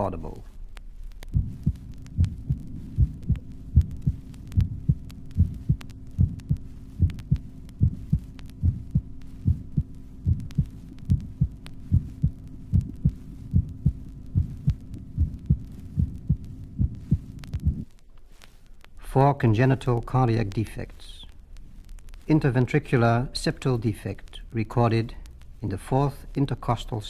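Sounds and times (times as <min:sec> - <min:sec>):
faint steady hum: 0:00.0 - 0:27.0
heartbeat thuds: 0:00.5 - 0:18.0.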